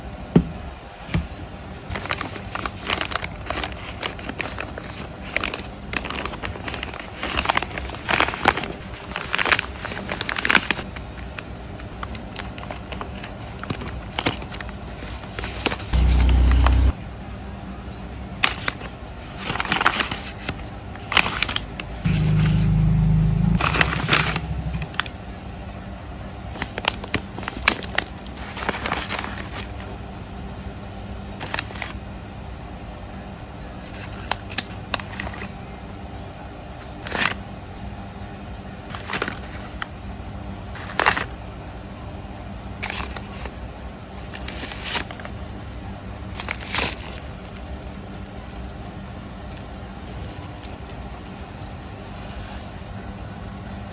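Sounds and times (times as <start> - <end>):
plastic packaging crinkling: 1.9 - 10.9, 49.5 - 51.9
low rumble: 16.0 - 17.1, 22.0 - 25.4.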